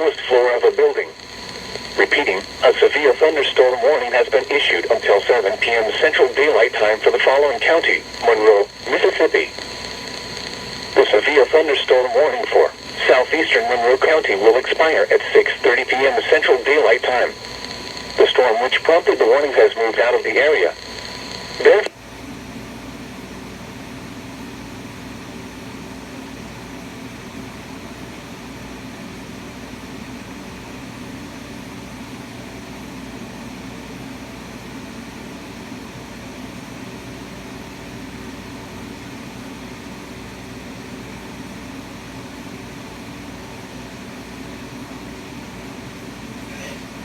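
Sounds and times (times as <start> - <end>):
low even hum: 0.0 - 21.8
radio static hiss: 0.0 - 22.0.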